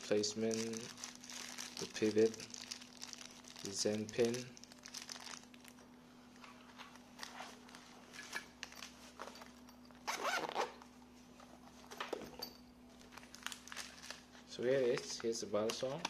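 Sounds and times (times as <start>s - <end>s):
zipper being pulled: 10.0s - 10.8s.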